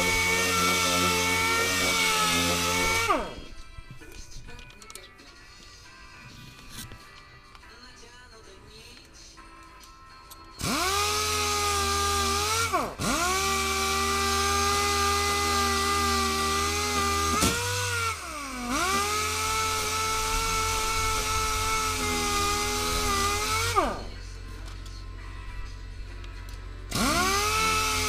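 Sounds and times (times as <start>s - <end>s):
power tool motor whining: 0.0s - 3.7s, 10.6s - 24.4s, 26.5s - 28.0s.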